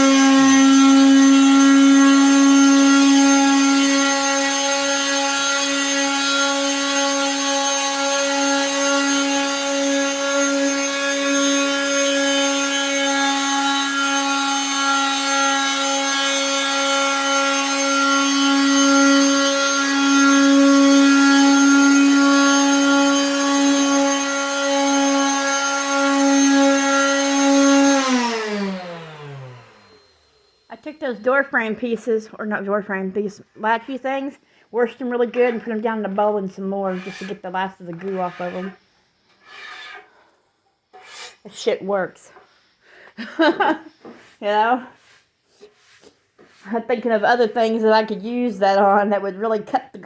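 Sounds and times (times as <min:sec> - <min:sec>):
electric sander on wood: 0:00.0 - 0:31.4, 0:36.8 - 0:38.8.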